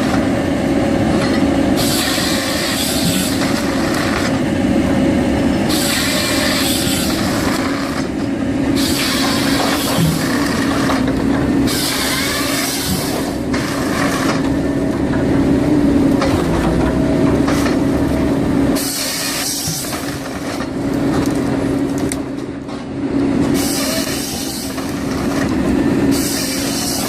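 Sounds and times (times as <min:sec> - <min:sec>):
heavy machinery engine humming: 0:00.0 - 0:27.0.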